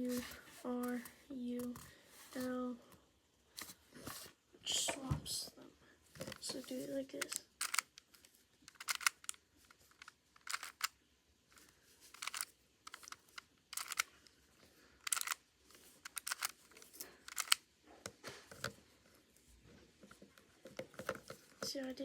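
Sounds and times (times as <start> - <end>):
puzzle cube clicking: 6.3 - 11.0, 12.1 - 14.3, 15.0 - 17.6.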